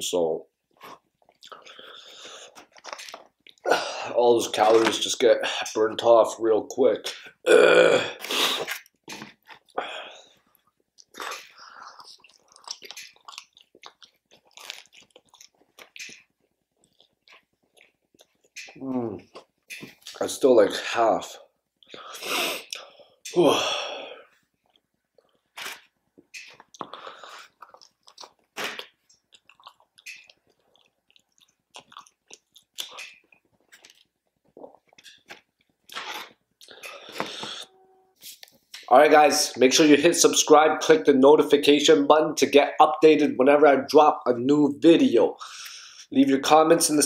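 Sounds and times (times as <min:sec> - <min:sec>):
wet chewing mouth sounds: 0:00.7 - 0:03.6, 0:10.5 - 0:20.2, 0:24.6 - 0:37.2.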